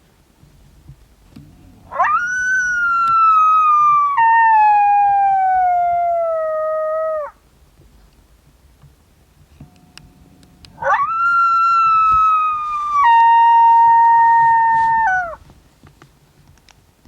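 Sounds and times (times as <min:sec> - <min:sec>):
coyote howling: 0:01.6 - 0:07.4, 0:10.8 - 0:15.4.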